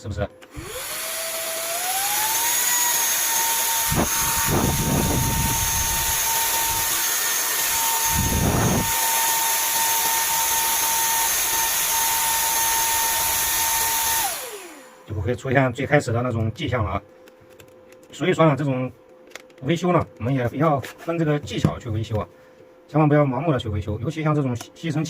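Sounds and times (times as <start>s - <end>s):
vacuum cleaner motor whine: 0.4s - 15.4s.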